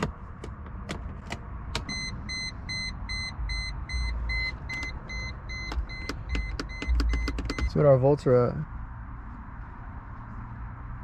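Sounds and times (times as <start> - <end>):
car warning chime beeping: 1.8 - 7.8
clicks: 5.6 - 7.7.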